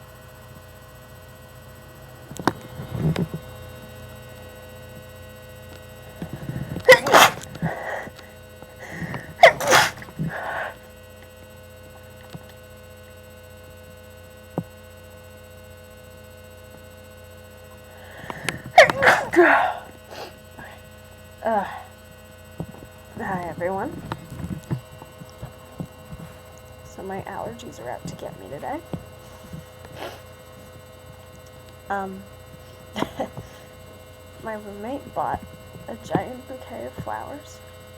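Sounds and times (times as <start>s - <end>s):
person sneezing loudly: 6.9s - 8.1s, 8.8s - 10.8s, 18.7s - 20.4s
quiet breathing: 17.9s - 18.7s.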